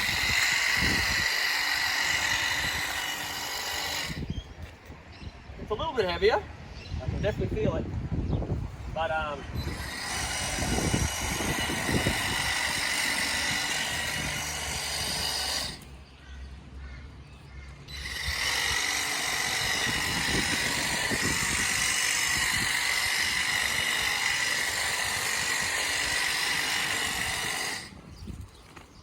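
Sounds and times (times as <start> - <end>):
hedge trimmer whining: 0.0 - 4.3, 9.5 - 15.9, 17.9 - 28.1.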